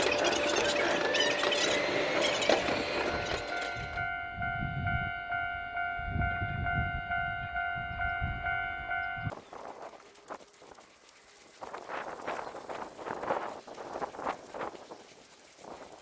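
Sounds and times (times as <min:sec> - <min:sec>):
level-crossing alarm ringing: 0:00.0 - 0:09.3.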